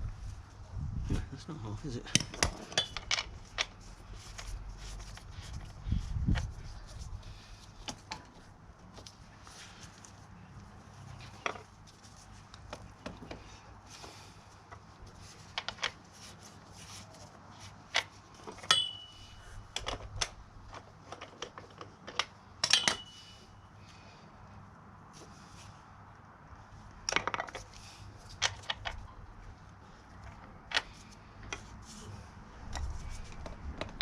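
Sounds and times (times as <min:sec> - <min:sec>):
metal spanners clinking on bolts: 0:02.1 - 0:03.7, 0:18.5 - 0:20.3, 0:22.6 - 0:23.4.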